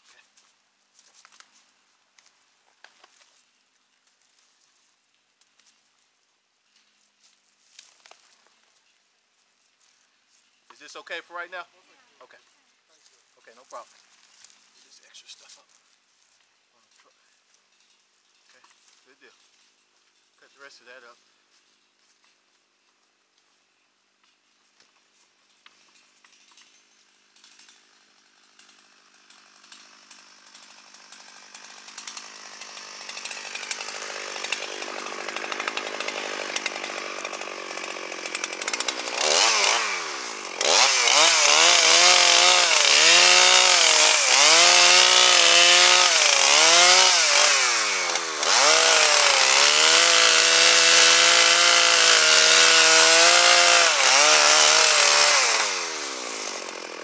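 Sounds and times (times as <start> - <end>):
chainsaw cutting wood: 24.9 - 57.0.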